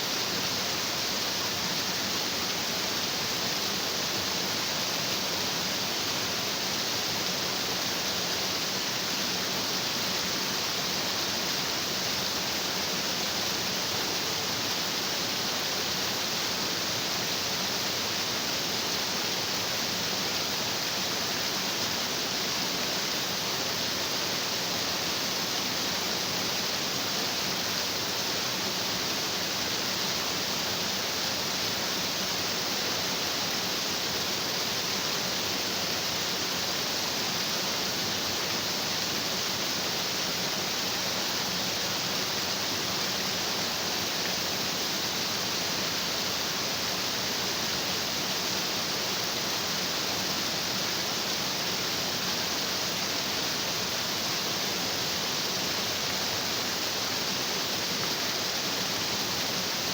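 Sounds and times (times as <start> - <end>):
stream rushing over rocks: 0.1 - 59.9.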